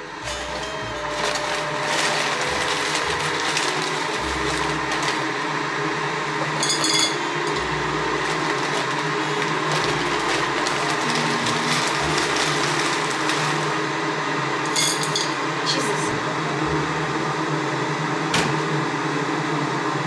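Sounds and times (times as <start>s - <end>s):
electric blender running: 0.0s - 20.0s
glass clink: 6.6s - 7.6s, 14.7s - 15.4s.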